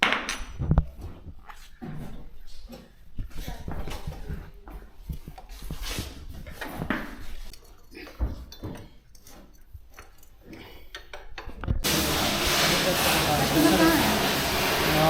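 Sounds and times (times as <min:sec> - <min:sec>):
tools clinking and knocking: 0:06.4 - 0:11.8
loud steady hiss: 0:11.8 - 0:15.0.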